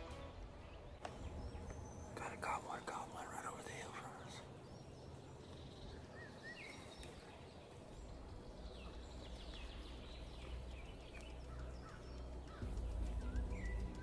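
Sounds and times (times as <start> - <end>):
songbirds chirping: 0.0 - 14.0
low rumble: 8.2 - 14.0.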